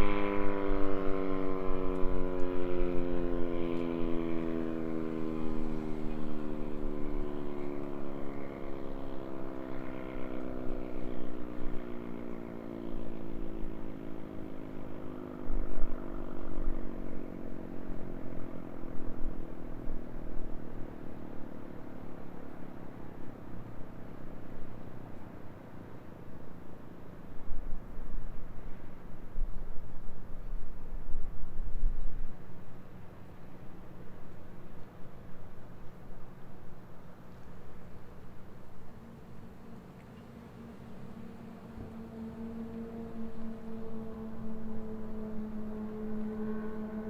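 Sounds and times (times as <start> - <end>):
warning siren winding down: 0.0 - 10.2, 40.6 - 47.0
traffic rumbling: 35.7 - 47.0.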